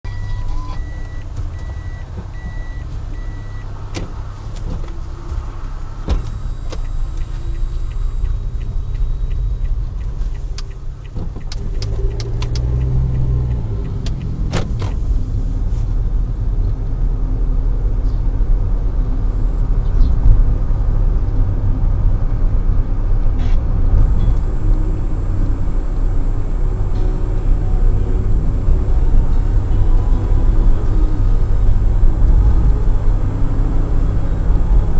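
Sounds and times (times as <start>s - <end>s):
car engine and road rumble: 0.0s - 34.9s
sharp clicks and knocks: 10.0s - 15.0s.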